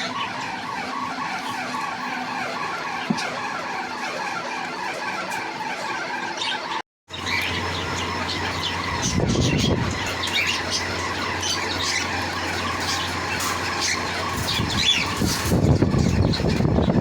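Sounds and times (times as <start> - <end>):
parrot squawking and chirping: 0.0 - 3.0, 5.6 - 16.9
steady low hum: 7.1 - 17.0.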